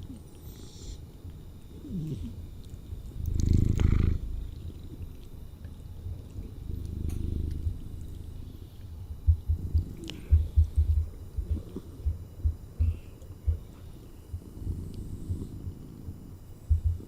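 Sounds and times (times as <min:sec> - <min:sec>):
cat purring: 0:00.0 - 0:17.0
low thumps: 0:09.2 - 0:14.8, 0:16.7 - 0:17.0.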